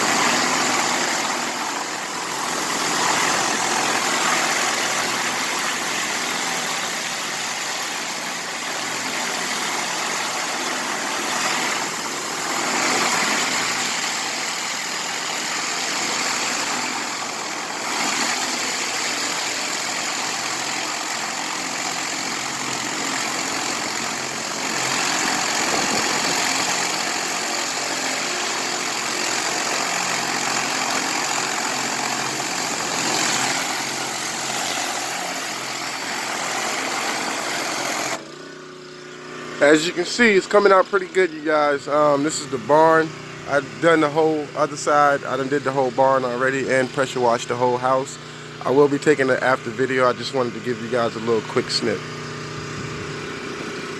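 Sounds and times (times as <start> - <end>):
high-pressure water jet hissing: 0.0 - 38.3
pressure washer engine drone: 0.0 - 53.9.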